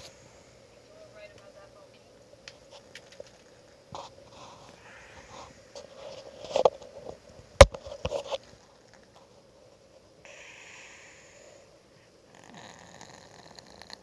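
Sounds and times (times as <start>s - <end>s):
hissy breath: 0.0s - 0.8s, 4.2s - 6.2s, 10.2s - 13.0s
rustling: 0.0s - 10.2s
cat snoring: 4.4s - 5.6s, 10.2s - 11.7s, 12.3s - 14.0s.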